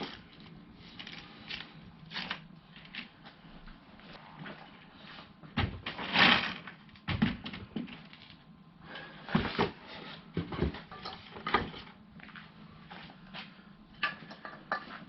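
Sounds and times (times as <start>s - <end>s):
parts knocking and clunking: 9.3s - 11.9s, 14.0s - 15.0s.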